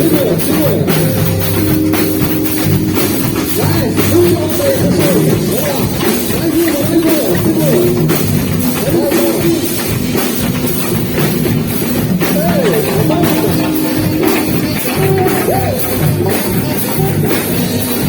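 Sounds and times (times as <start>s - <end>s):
saxophone melody: 0.0s - 6.8s, 11.5s - 18.0s
drum kit beat: 0.0s - 18.0s.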